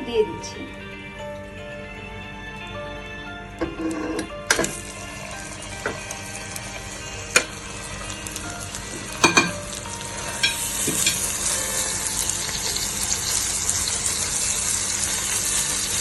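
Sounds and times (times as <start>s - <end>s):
meat sizzling in a frying pan: 3.8s - 16.0s.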